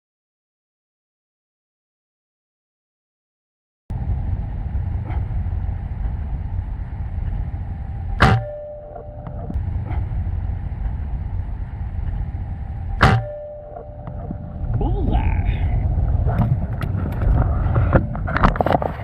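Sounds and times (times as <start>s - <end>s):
steady low rumble: 3.9s - 19.0s
air rifle shot: 8.2s - 8.6s, 13.0s - 13.5s.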